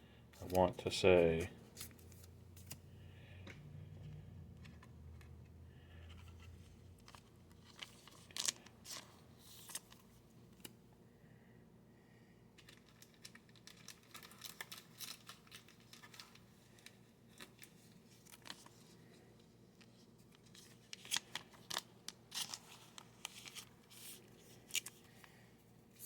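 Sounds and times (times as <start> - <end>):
plastic sleeves crinkling: 6.0 - 10.7, 12.6 - 19.1, 19.8 - 26.0.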